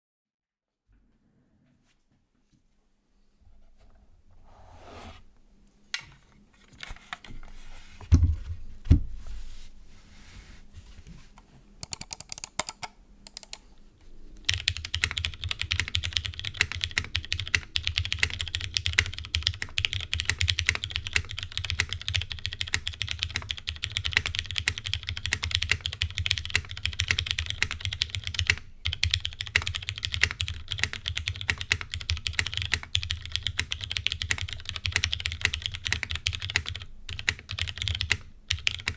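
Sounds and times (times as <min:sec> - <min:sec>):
fast mechanical keyboard typing: 0:11.8 - 0:13.6, 0:14.4 - 0:38.9
scattered clicks: 0:11.8 - 0:13.7.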